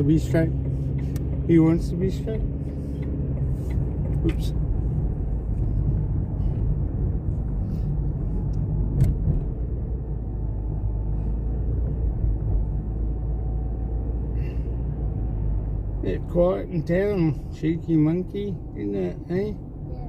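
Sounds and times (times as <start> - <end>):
car cabin rumble: 0.0 - 16.0.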